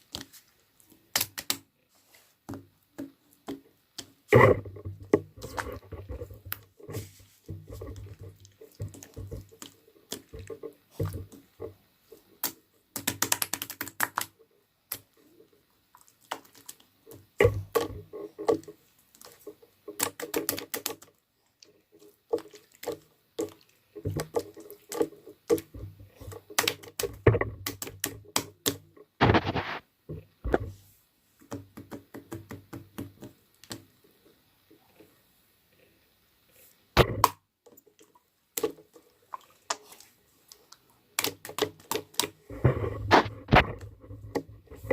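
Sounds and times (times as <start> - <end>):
slime crackling and popping: 1.0 - 1.7, 12.4 - 14.3, 19.2 - 21.0, 26.5 - 29.8, 40.6 - 42.4.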